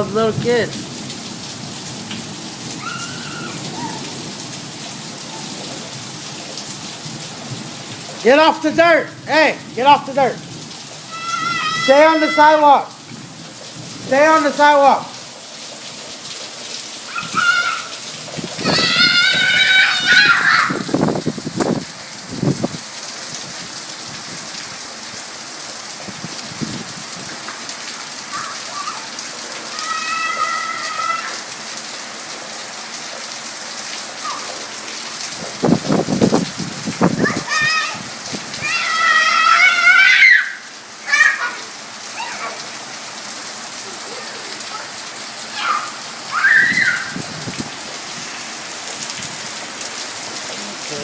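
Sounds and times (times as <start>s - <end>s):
steady rain hitting ground: 0.0s - 51.0s
child calling out: 2.8s - 4.2s, 11.0s - 12.9s, 17.1s - 18.0s, 18.6s - 20.9s, 28.3s - 31.5s, 34.2s - 34.6s, 37.2s - 42.8s, 43.9s - 47.2s.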